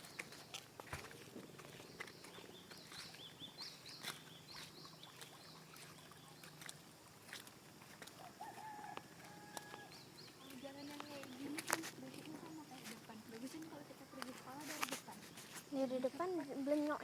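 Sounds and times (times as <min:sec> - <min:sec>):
small bird chirping: 0:01.5 - 0:13.0
soft ticks and taps: 0:08.9 - 0:15.7.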